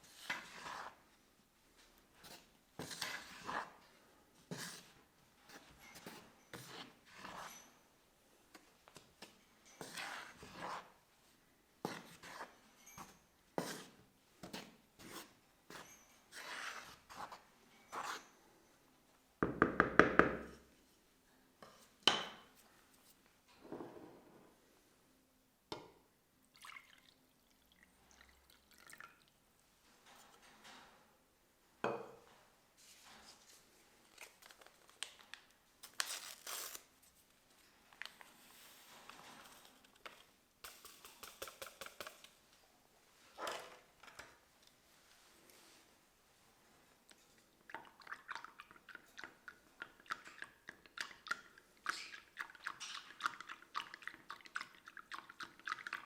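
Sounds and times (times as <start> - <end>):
liquid sounds: 47.6 - 56.0.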